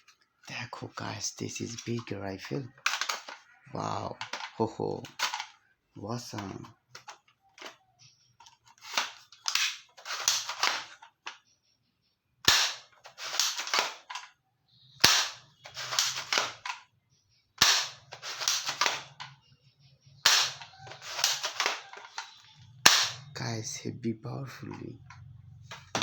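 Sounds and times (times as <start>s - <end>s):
toy rifle click: 1.7s - 5.6s, 8.4s - 11.4s, 12.5s - 14.4s, 15.0s - 16.8s, 17.6s - 19.4s, 20.2s - 23.3s
toy rifle gunfire sounds: 2.8s - 5.5s, 8.9s - 11.0s, 12.4s - 14.3s, 15.0s - 16.8s, 17.6s - 19.3s, 20.2s - 23.3s.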